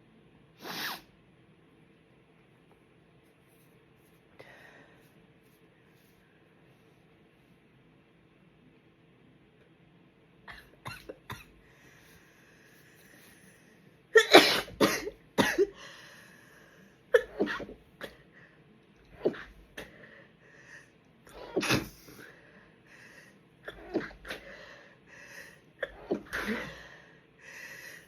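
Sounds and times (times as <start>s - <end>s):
person stifled sneezes: 14.2s - 15.7s, 17.1s - 18.2s, 21.4s - 22.2s, 23.7s - 24.4s, 25.8s - 26.8s.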